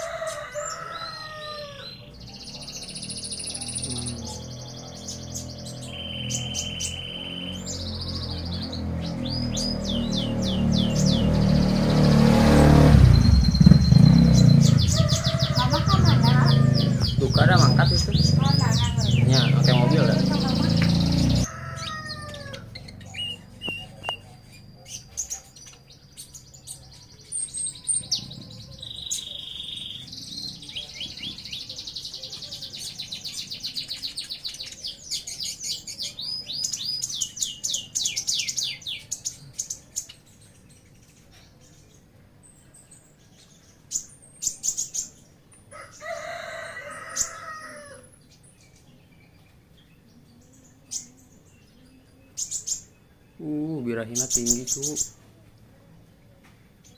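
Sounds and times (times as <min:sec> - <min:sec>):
rooster crowing: 0:00.0 - 0:02.2, 0:13.6 - 0:17.8, 0:21.2 - 0:23.0, 0:45.7 - 0:48.2
songbirds singing: 0:00.0 - 0:56.9.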